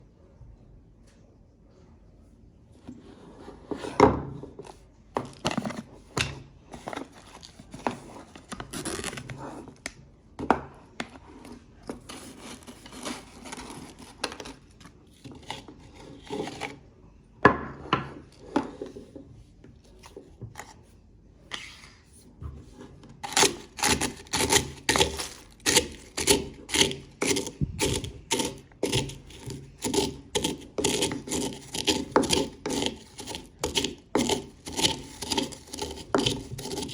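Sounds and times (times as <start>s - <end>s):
crisps crunching in a spice grinder: 23.2s - 36.9s.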